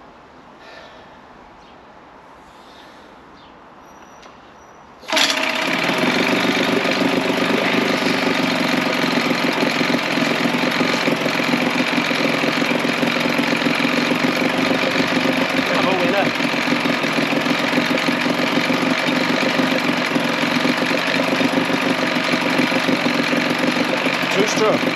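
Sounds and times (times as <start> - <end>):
outboard motor idling: 5.1 - 24.9.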